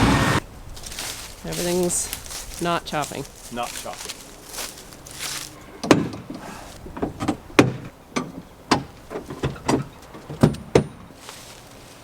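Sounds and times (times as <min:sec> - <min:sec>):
sharp knocks and clunks: 0:05.8 - 0:11.2.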